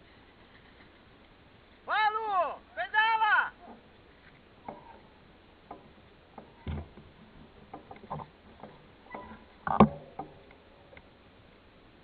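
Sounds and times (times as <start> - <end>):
mountain bike rattling and knocking: 4.6 - 10.5.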